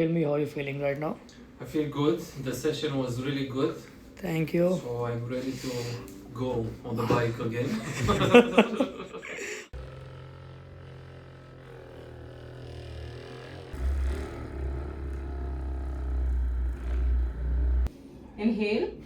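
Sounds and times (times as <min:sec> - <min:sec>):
low hum: 0:09.7 - 0:18.4.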